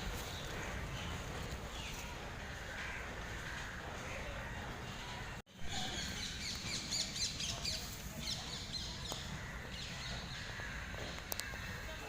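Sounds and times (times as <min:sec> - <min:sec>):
small birds chirping: 0:04.1 - 0:12.0.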